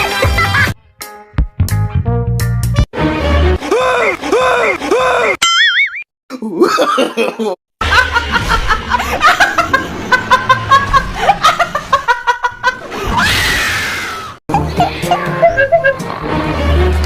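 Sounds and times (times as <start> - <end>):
people laughing: 6.4 - 13.1, 14.5 - 16.2.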